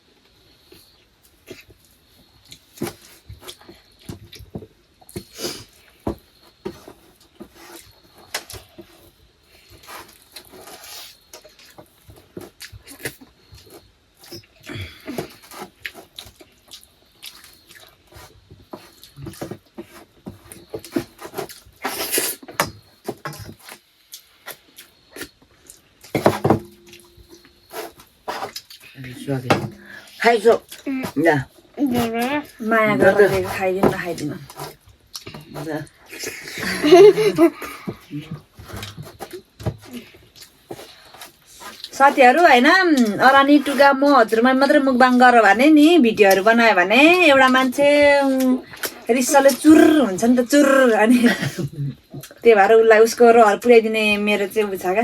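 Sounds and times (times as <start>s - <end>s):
wet chewing and lip smacks: 15.8s - 18.1s.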